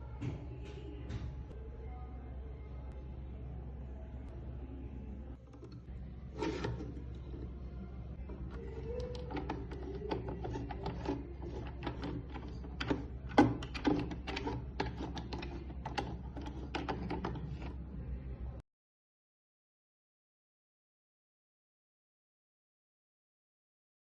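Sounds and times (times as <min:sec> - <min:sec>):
plastic slicer clicks and knocks: 0:08.4 - 0:17.7.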